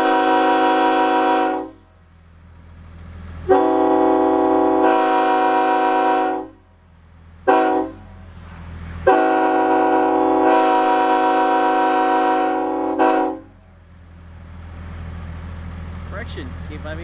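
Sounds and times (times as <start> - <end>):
locomotive air horn blasts: 0.0 - 1.9, 3.4 - 6.7, 7.4 - 8.2, 9.0 - 13.6.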